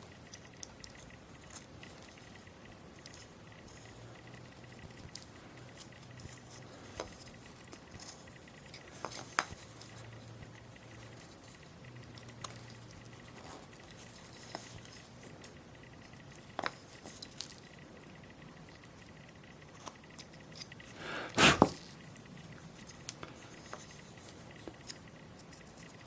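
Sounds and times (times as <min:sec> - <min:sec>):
small clicks and ticks: 0:00.0 - 0:21.0, 0:21.8 - 0:26.0
blade scraping wood: 0:21.1 - 0:21.8.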